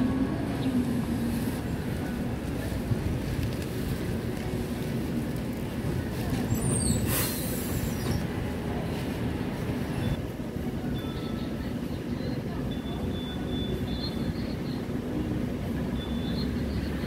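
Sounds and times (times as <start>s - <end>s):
bus engine rumbling: 0.0s - 17.0s
short air hiss: 7.1s - 7.9s.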